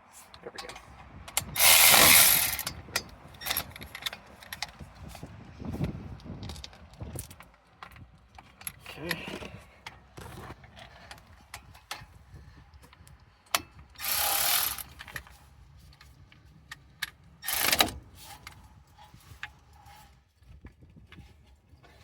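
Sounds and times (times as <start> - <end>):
hand tools clicking and ratcheting: 0.6 - 5.2, 12.8 - 18.6.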